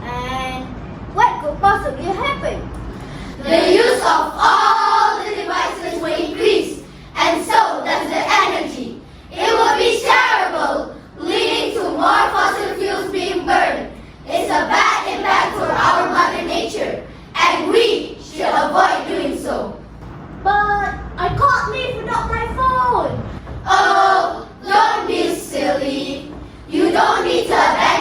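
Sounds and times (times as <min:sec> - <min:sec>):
young voices chanting in unison: 0:03.2 - 0:19.9, 0:23.6 - 0:28.0.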